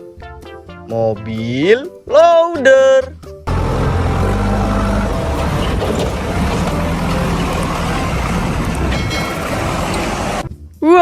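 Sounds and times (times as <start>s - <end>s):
heavy vehicle engine rumbling: 3.5s - 10.5s.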